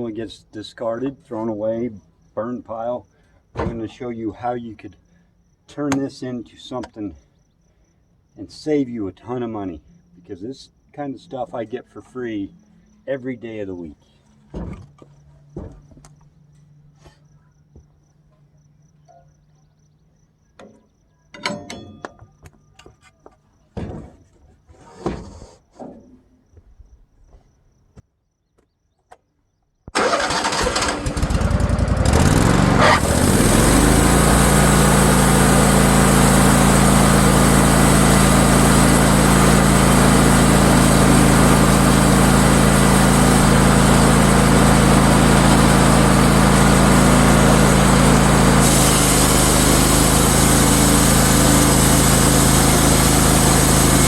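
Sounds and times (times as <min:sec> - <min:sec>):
sawmill engine starting and running: 0:30.0 - 0:54.0.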